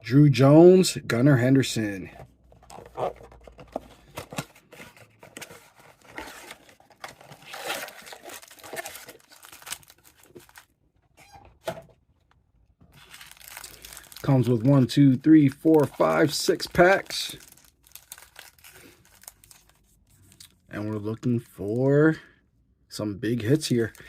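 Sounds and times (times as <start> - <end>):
cardboard tearing and crinkling: 2.7 - 10.7, 13.0 - 14.9, 15.5 - 19.8.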